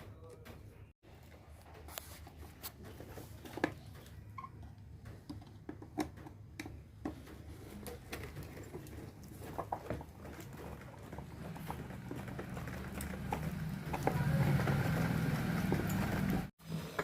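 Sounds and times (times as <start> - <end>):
hand tools clicking and tapping: 4.6 - 16.5.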